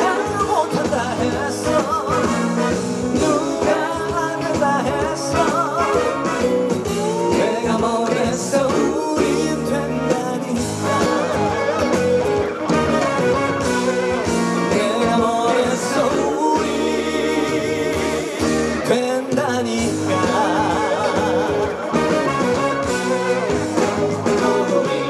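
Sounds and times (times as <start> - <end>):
man singing with vibrato: 0.0 - 12.9, 14.1 - 25.0
band with guitar: 0.0 - 25.0.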